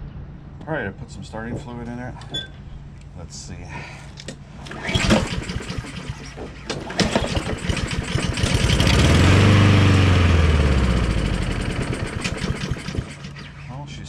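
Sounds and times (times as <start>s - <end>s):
pull cord cranking: 4.6s - 9.7s, 10.7s - 13.7s
lawnmower engine running: 4.6s - 13.7s.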